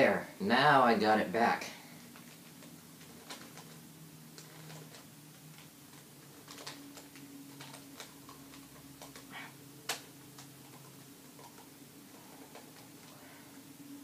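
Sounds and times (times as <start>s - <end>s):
low steady hum: 0.0s - 14.0s
puzzle cube clicking: 2.1s - 11.8s.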